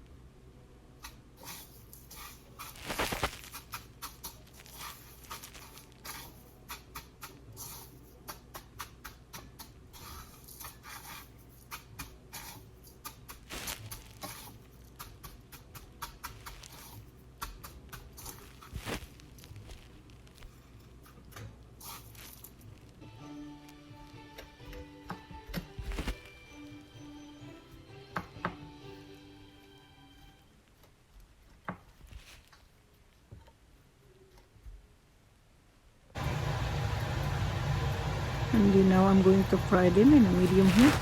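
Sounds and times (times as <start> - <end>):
crackly rustling of breadcrumbs: 1.4 - 6.7, 10.0 - 23.0, 25.8 - 26.3, 40.0 - 41.0.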